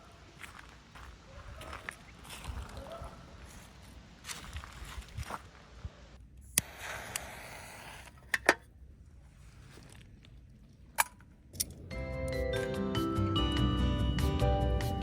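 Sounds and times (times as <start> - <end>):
rustle: 0.0 - 8.4
music: 11.9 - 15.0.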